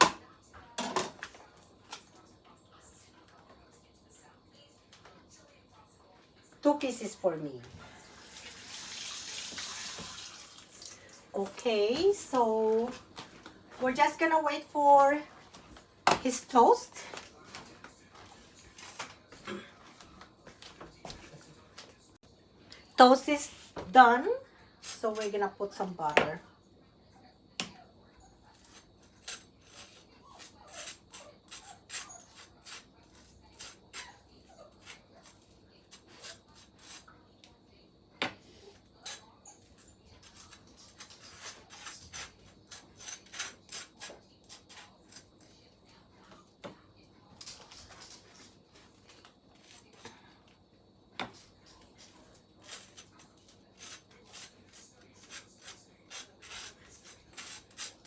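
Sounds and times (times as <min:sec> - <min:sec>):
knife scraping butter on toast: 0:28.6 - 0:37.1, 0:39.0 - 0:45.5, 0:52.2 - 0:58.0.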